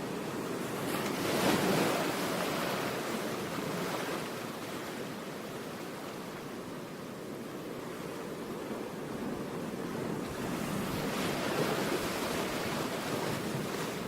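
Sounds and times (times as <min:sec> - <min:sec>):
ocean surf rushing: 0:00.0 - 0:05.2, 0:07.5 - 0:14.0
wave washing out: 0:08.2 - 0:14.0.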